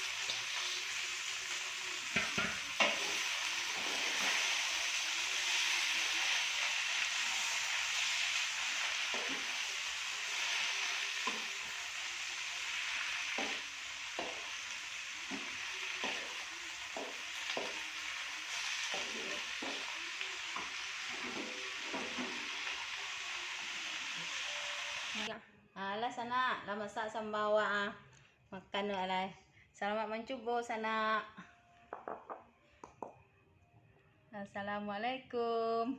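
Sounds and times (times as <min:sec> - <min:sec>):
vegetables sizzling in oil: 0:00.0 - 0:25.3.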